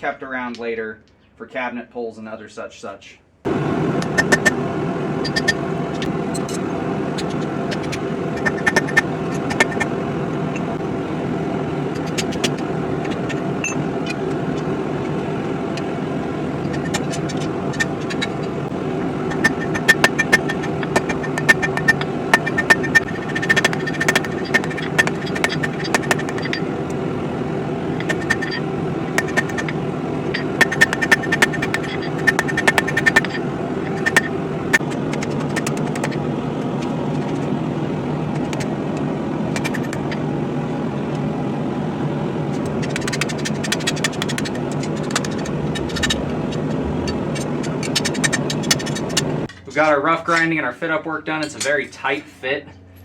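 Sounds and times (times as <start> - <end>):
metal ticking and scraping: 4.0 - 4.6, 5.2 - 9.9, 11.9 - 15.9, 16.6 - 26.7, 27.9 - 37.5, 39.5 - 40.2, 42.6 - 49.7
electric grinder grinding steel: 16.5 - 36.2.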